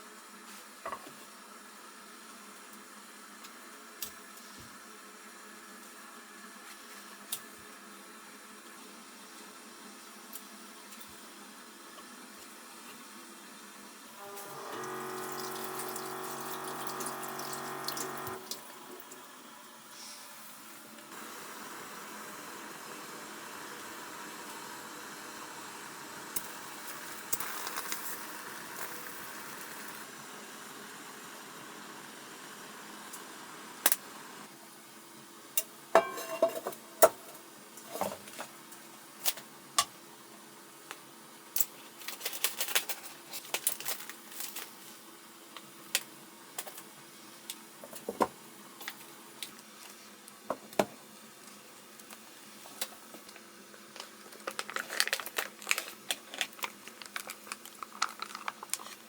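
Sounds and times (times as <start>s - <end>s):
water running from a tap: 14.8s - 18.7s.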